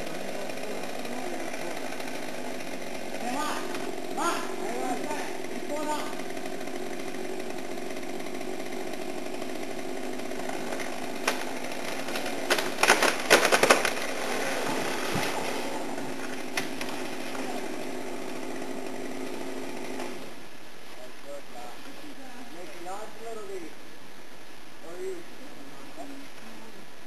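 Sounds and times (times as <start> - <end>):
chainsaw cutting: 0.0 - 20.7
loud sharp cracks: 10.7 - 15.4.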